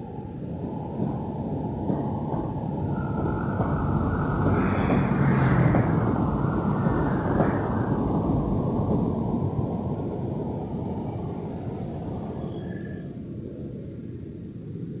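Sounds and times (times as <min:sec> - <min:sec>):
vehicle rumble: 0:01.5 - 0:12.6.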